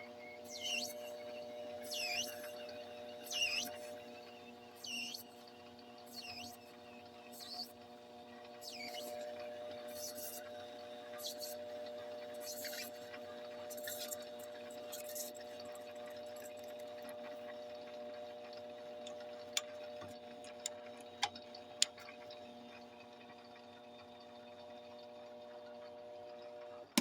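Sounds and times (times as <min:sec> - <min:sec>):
pipe humming held tones: 0:11.2 - 0:22.3.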